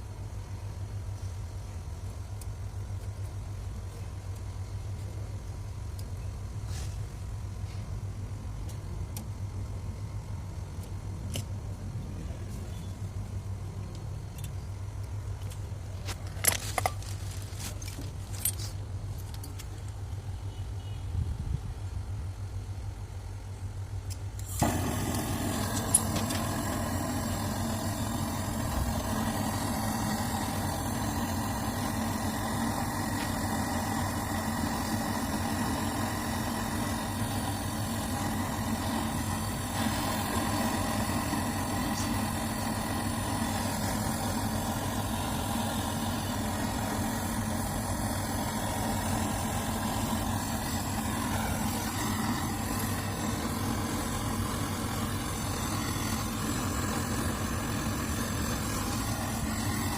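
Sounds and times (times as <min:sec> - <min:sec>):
motor-driven machine humming: 0:24.2 - 0:59.9.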